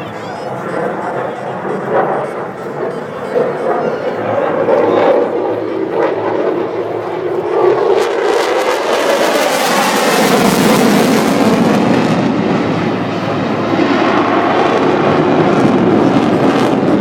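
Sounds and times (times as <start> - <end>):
jet engine roar: 0.0 - 17.0.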